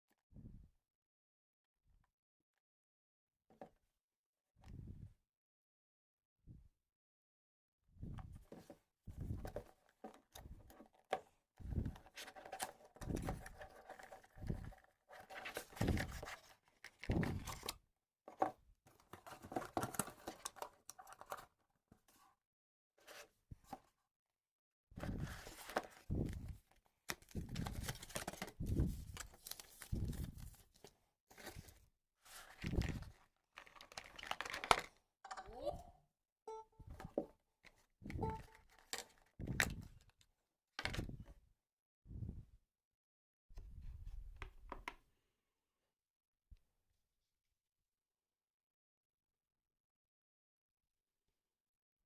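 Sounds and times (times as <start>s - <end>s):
cardboard and plastic tearing: 33.7s - 34.9s.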